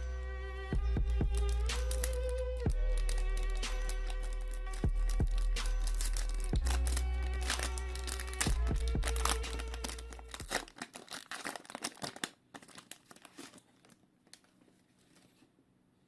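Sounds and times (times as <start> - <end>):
music with deep bass: 0.0 - 10.5
wrapper crinkling and tearing: 1.3 - 15.3.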